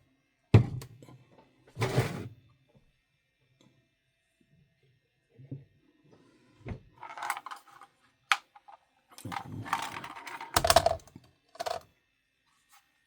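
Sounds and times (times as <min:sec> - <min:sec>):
rattling clicks: 0:07.0 - 0:08.5, 0:09.2 - 0:11.8.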